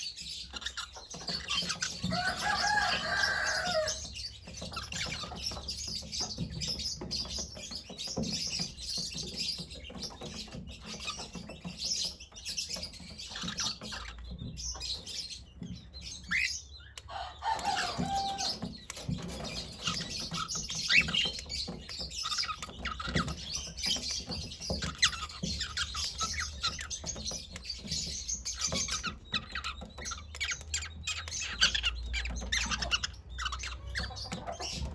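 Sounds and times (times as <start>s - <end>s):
cockatiel chirping: 19.4s - 34.9s.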